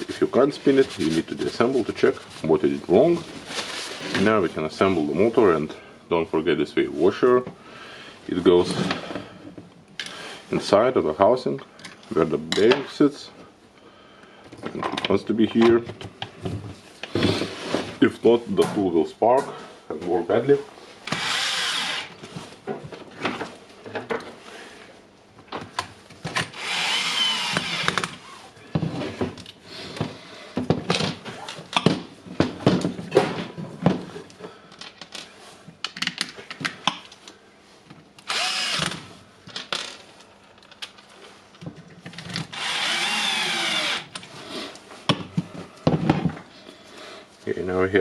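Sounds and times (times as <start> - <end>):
electric screwdriver whine: 21.1 - 22.1, 26.5 - 28.1, 38.2 - 39.0, 42.5 - 44.1.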